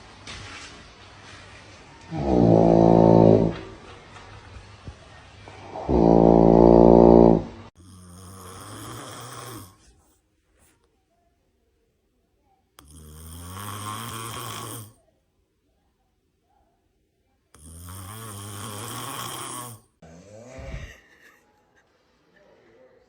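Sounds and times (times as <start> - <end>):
person snoring: 2.1 - 3.6, 5.8 - 9.8, 12.8 - 15.0, 17.6 - 21.0.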